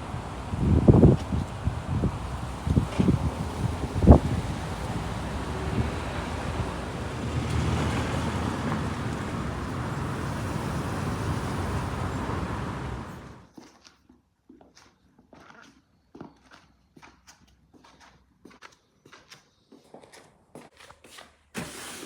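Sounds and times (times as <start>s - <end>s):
wind buffeting microphone: 0.0s - 13.4s.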